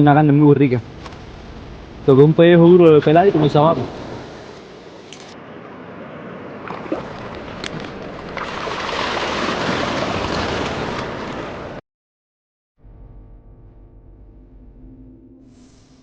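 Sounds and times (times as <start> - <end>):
waves washing on a beach: 3.2 - 11.8.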